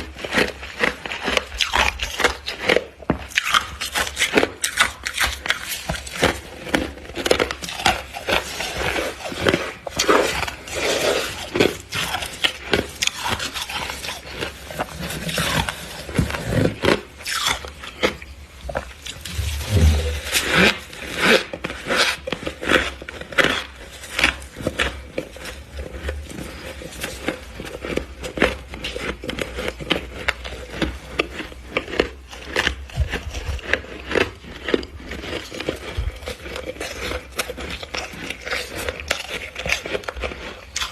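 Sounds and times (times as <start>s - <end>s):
frost being chewed: 0.0s - 40.9s.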